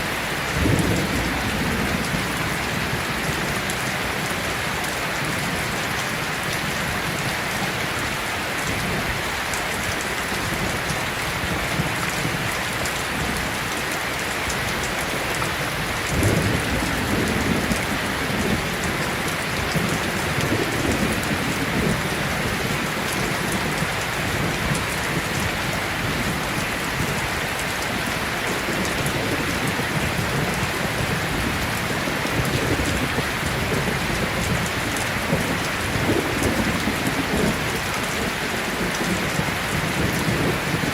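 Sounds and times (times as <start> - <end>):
heavy rain falling: 0.0 - 40.9
thunder rumbling: 0.4 - 5.8, 14.8 - 40.9.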